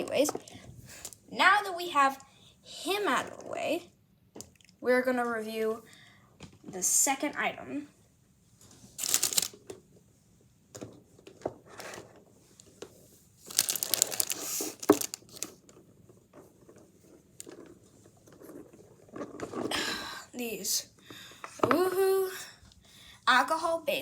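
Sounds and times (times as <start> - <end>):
packaging crinkling: 9.0 - 9.6, 13.4 - 15.6.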